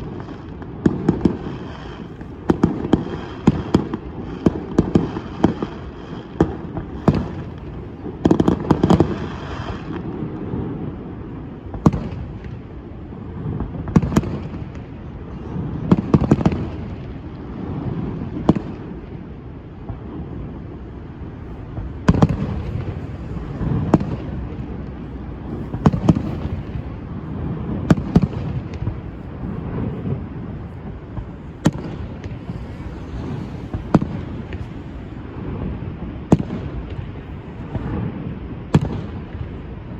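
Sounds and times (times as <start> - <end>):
fireworks bursting: 0.0 - 39.9
low rumble: 20.2 - 36.2.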